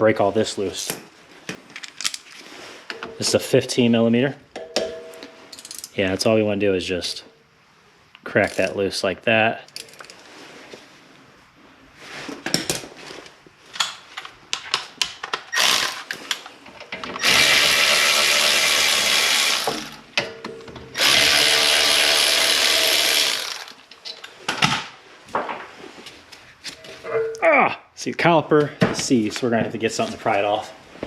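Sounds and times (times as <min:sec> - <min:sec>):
clicks and knocks of metal parts: 0:04.6 - 0:06.0, 0:08.4 - 0:08.8, 0:09.7 - 0:10.2, 0:13.8 - 0:17.3
power tool spinning out bolts: 0:15.5 - 0:16.3, 0:17.2 - 0:20.0, 0:20.9 - 0:23.9.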